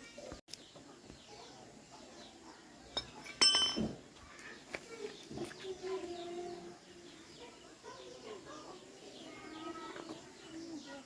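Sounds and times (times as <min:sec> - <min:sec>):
metal striking metal clink: 0:03.0 - 0:03.9.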